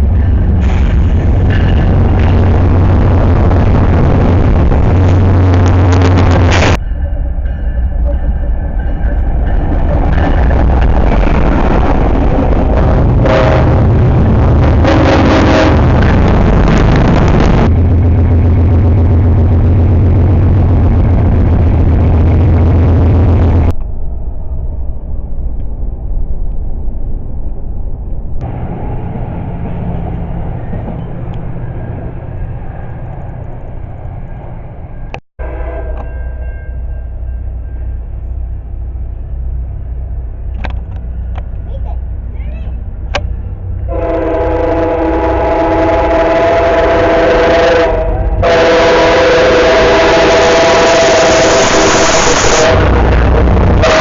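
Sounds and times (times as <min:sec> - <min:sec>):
train rumbling past: 0:00.0 - 0:54.0
locomotive air horn blasts: 0:12.9 - 0:16.5, 0:35.4 - 0:36.0, 0:43.9 - 0:54.0.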